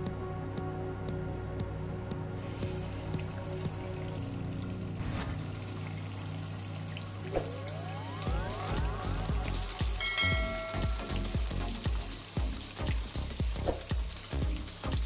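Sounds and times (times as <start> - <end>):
background music with beat: 0.0 - 4.5, 7.4 - 15.0
food sizzling in a pan: 7.7 - 15.0.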